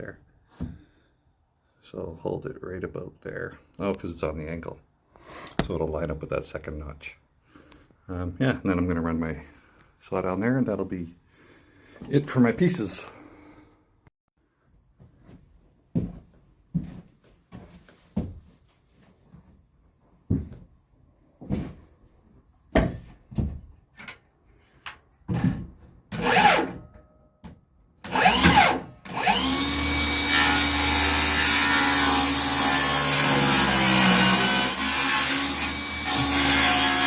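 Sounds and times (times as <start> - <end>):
circular saw cutting wood: 26.2 - 26.8, 28.1 - 37.0
wood and tools clattering: 29.7 - 37.0.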